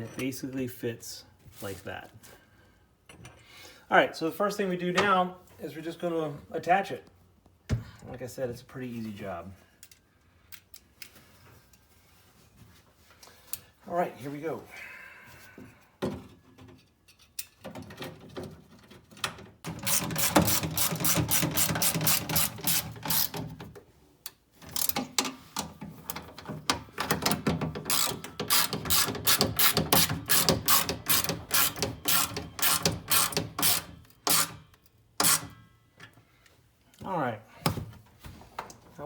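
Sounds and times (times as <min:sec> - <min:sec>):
socket ratchet wrench clicking: 0:27.9 - 0:35.5.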